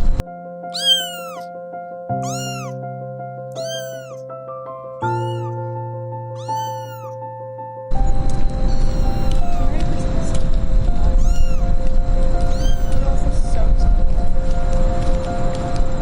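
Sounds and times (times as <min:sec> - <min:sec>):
kitten meowing: 0:00.7 - 0:02.8, 0:03.5 - 0:04.3, 0:05.0 - 0:05.8, 0:06.4 - 0:07.2, 0:08.5 - 0:09.9, 0:11.0 - 0:13.3.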